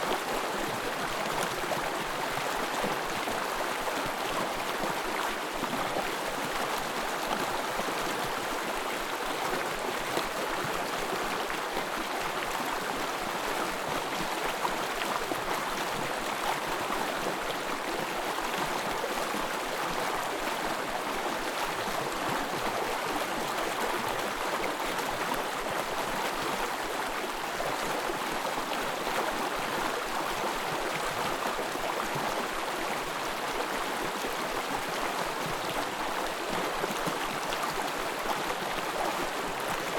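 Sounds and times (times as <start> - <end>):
brook babbling: 0.0 - 39.9.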